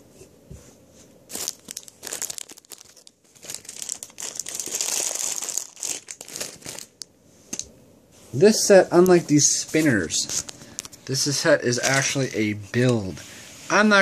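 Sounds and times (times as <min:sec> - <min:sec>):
plastic packaging crackling: 0:01.3 - 0:07.1.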